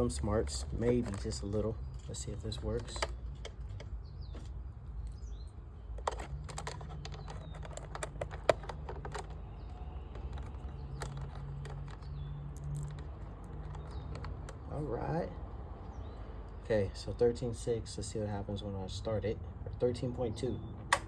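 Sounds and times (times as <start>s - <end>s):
hands handling tools and parts: 0.0s - 14.9s.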